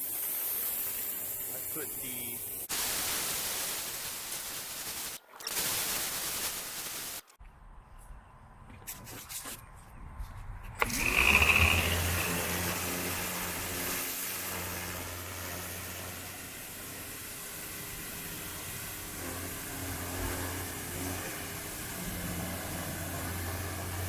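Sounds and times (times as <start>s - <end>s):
water spray hissing: 0.0s - 7.3s, 10.8s - 24.0s
pressure washer motor humming: 10.8s - 24.0s.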